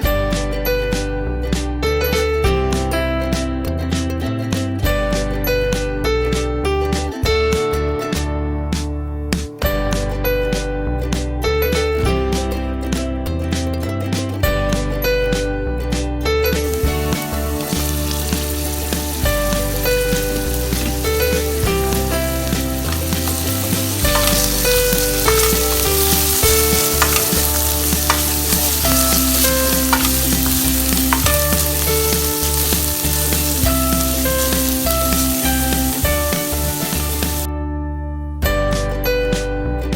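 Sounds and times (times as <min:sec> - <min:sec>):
background music with bass line: 0:00.0 - 0:39.9
food sizzling in a pan: 0:16.6 - 0:37.5
stirring clicks and scrapes: 0:22.4 - 0:33.5.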